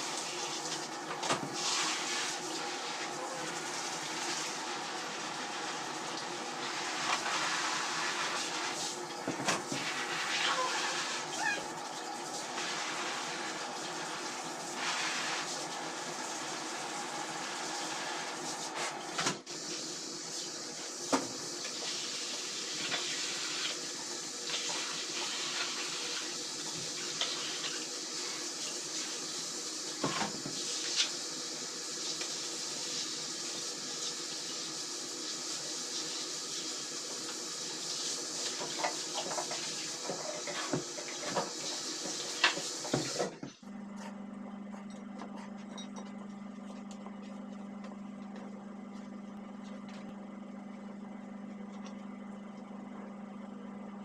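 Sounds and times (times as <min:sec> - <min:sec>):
water running from a tap: 0:00.0 - 0:43.4.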